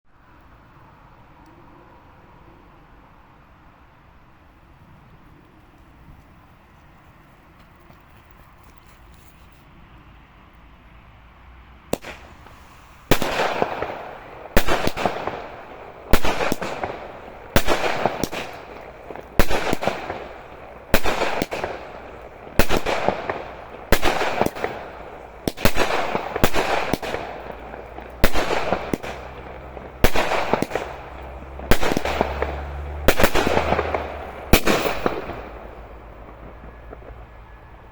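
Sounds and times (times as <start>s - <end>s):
firework bangs with crackling tails: 11.9s - 37.9s.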